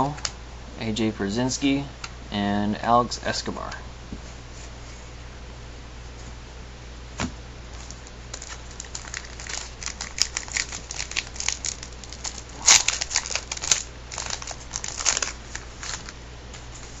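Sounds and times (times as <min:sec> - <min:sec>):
wrapper crinkling and tearing: 0:07.7 - 0:16.2.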